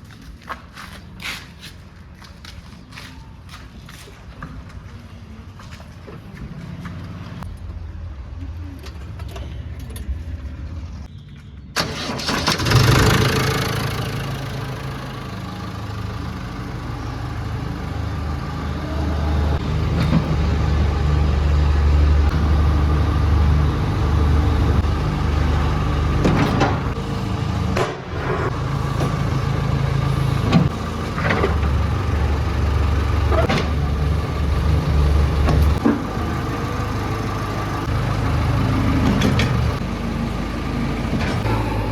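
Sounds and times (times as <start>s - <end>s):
diesel machinery engine running: 11.8s - 41.9s.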